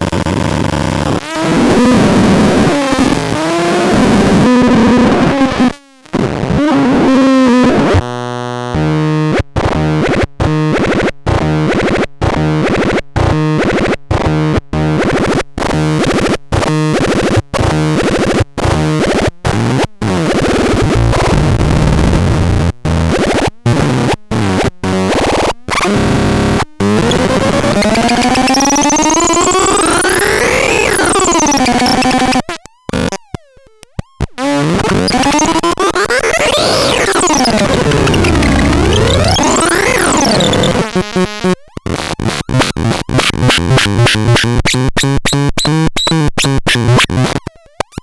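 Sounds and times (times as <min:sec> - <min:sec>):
stuttering stepped tones: 0:26.8 - 0:48.0
noisy synthesized tones: 0:26.9 - 0:32.5, 0:34.4 - 0:48.0
sweeping synth pitches: 0:27.1 - 0:32.3, 0:35.1 - 0:40.9.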